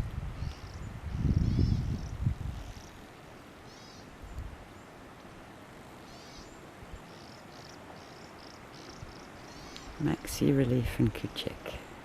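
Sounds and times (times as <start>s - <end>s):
steady outdoor hiss: 0.0s - 12.0s
high chirping calls: 0.4s - 3.0s, 6.0s - 10.6s.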